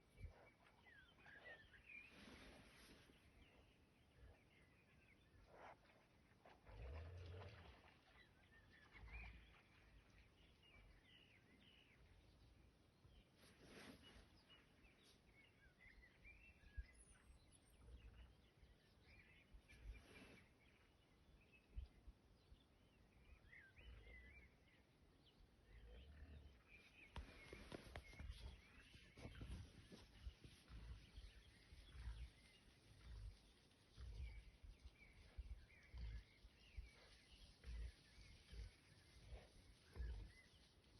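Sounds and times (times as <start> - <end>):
small birds chirping: 8.0 - 40.9.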